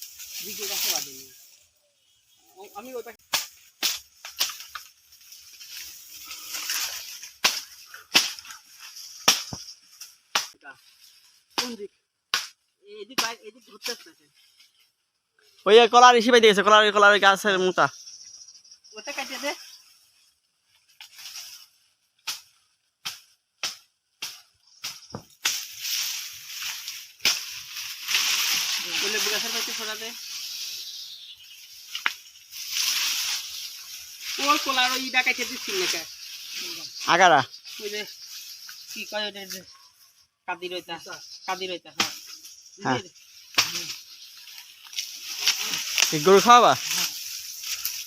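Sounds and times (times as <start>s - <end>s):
rustling hiss: 0.0s - 48.0s.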